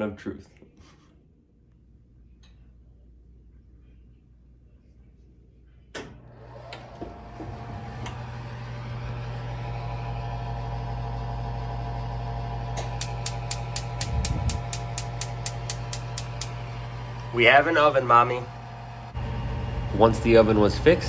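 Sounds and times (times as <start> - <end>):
cooling fan hum: 2.0 - 21.0
spark igniter clicking: 12.8 - 16.6.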